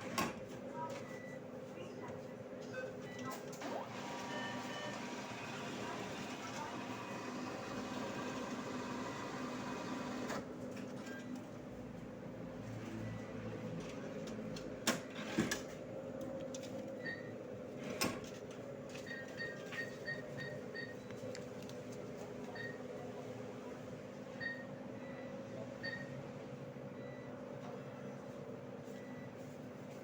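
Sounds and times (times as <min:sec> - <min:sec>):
keypad beeps: 0:19.0 - 0:21.4, 0:22.5 - 0:22.8.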